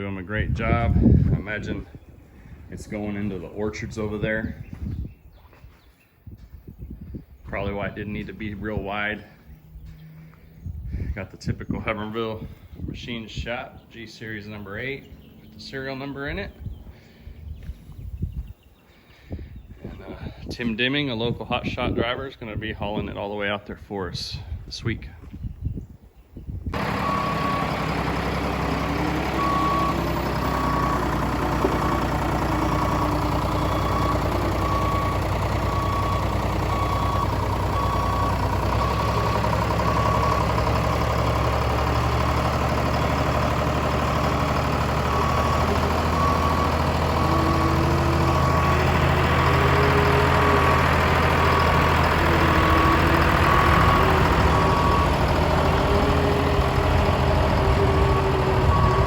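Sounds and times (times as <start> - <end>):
diesel engine running: 0.0 - 5.1, 7.5 - 18.0, 26.7 - 59.0
backup alarm beeping: 26.8 - 41.8, 44.7 - 59.0.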